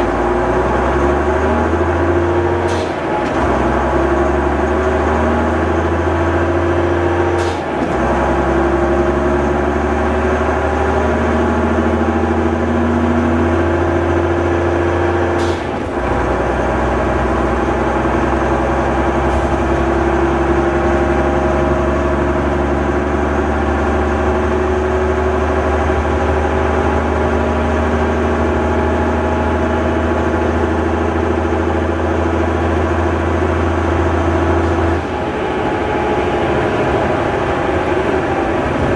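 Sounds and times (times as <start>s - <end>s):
bus engine pulling: 0.0s - 38.9s
gears sneezing: 2.7s - 3.6s, 7.4s - 8.0s, 15.4s - 16.0s.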